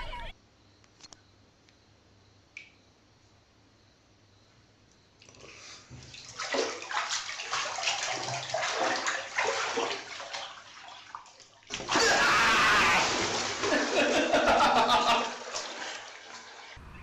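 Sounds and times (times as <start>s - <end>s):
water splashing and sloshing: 5.2s - 16.8s.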